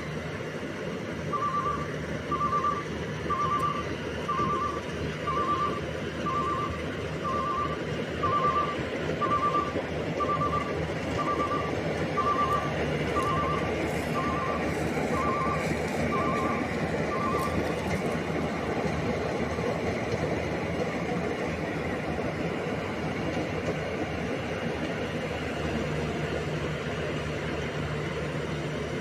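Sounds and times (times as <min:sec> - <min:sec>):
harvester engine running: 0:00.0 - 0:29.0
reversing alarm beeping: 0:01.2 - 0:17.8.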